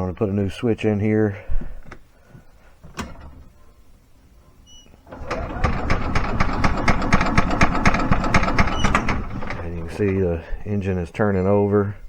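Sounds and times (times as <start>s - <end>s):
engine cranking over: 5.1s - 10.4s.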